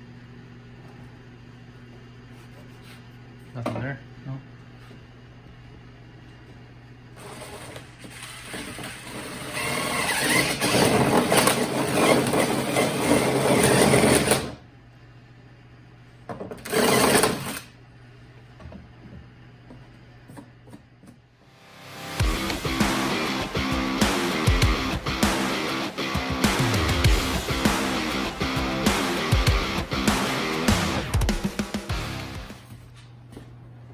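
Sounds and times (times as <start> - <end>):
power tool cutting metal panel: 8.2 - 14.6, 16.7 - 17.7.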